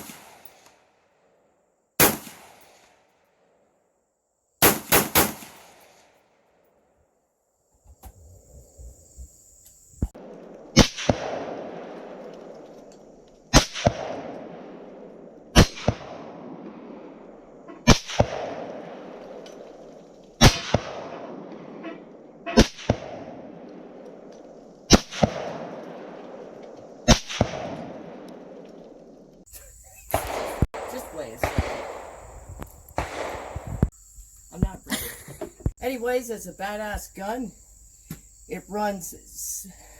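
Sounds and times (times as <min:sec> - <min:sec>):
rifle shots echoing: 0:00.0 - 0:00.7, 0:02.0 - 0:03.0, 0:04.6 - 0:06.1, 0:10.2 - 0:29.3, 0:30.1 - 0:32.4, 0:33.0 - 0:33.9.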